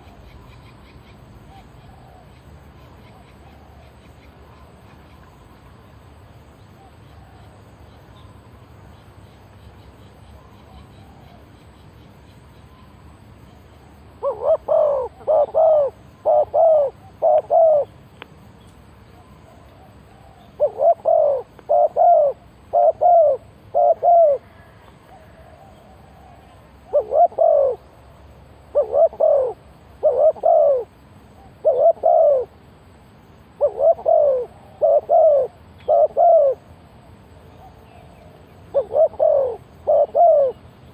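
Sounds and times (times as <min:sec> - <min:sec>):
dove cooing: 0:00.0 - 0:05.2, 0:14.2 - 0:18.0, 0:19.2 - 0:27.9, 0:28.6 - 0:32.6, 0:33.5 - 0:36.7, 0:37.4 - 0:40.7.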